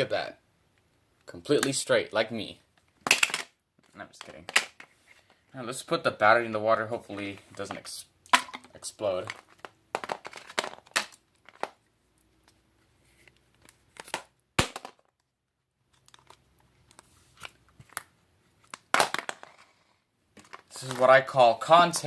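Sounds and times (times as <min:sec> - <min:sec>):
plastic phone clicks and crackles: 0:08.4 - 0:11.8.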